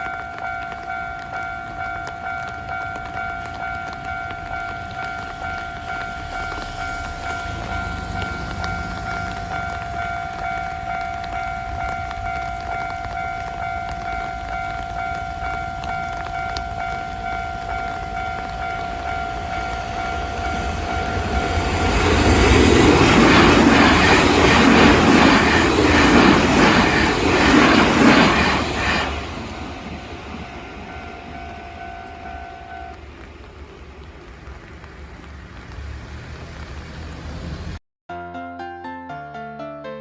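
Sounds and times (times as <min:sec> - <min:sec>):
train wheels clattering over rails: 0:00.0 - 0:32.9
level crossing warning bell: 0:00.0 - 0:33.0
piano music: 0:38.1 - 0:40.0.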